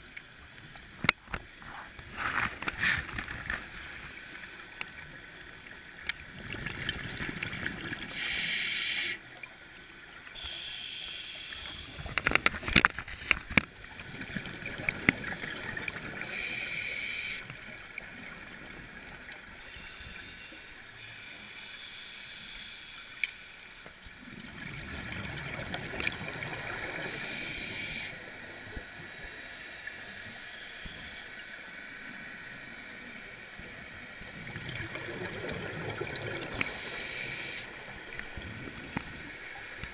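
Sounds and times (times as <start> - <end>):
scuba regulator breathing bubbles: 6.6 - 9.2, 25.4 - 28.2, 34.3 - 39.9.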